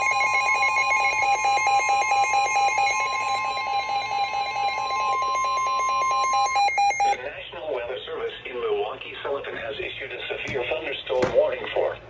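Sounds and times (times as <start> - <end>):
pulsing lower alarm tone: 0.0 - 7.2
steady alarm tone: 0.0 - 7.2.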